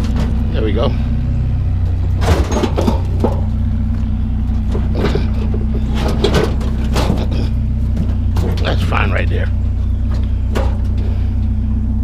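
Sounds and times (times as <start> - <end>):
truck engine idling: 0.0 - 12.0
scrap metal clattering: 1.9 - 9.4, 10.0 - 11.5.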